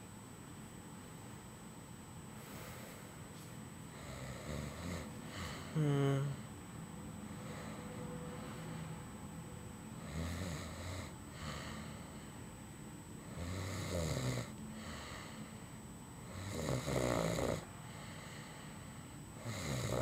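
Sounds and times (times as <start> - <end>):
quiet breathing: 2.3 - 6.6, 7.2 - 9.3, 10.0 - 13.6, 14.4 - 20.0
man snoring: 4.0 - 6.5, 10.0 - 11.9, 13.3 - 15.4, 16.2 - 17.6, 19.4 - 20.0.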